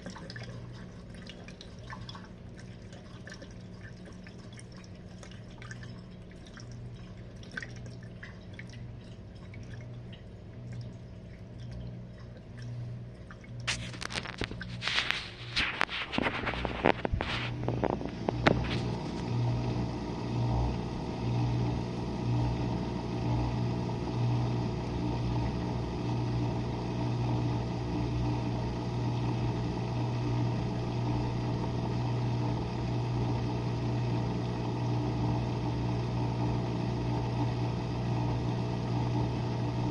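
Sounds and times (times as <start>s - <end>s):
water dripping: 0.0s - 14.7s
water splashing and clatter: 0.0s - 19.2s
dishwasher pump motor humming: 0.0s - 39.9s.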